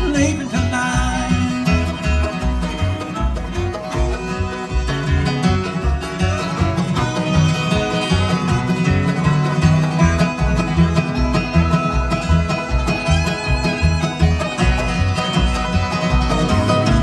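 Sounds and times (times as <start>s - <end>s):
banjo picking: 0.0s - 17.0s
bluegrass band playing: 0.0s - 17.0s
guitar picking: 0.0s - 17.0s
steady bass beat: 0.0s - 17.0s.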